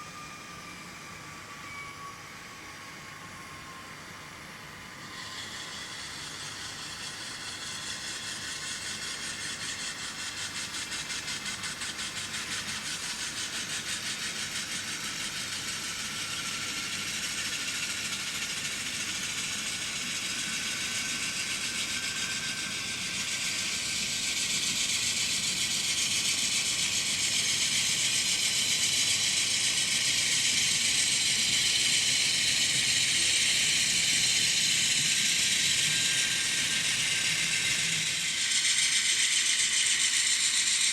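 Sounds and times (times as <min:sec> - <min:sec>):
model train motor whirring: 0:05.0 - 0:40.9.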